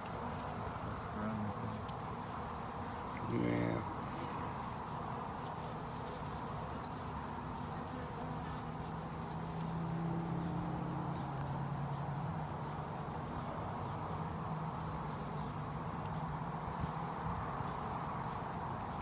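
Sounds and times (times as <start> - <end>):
close bee droning: 0.0 - 19.0
honeybees buzzing: 0.0 - 19.0.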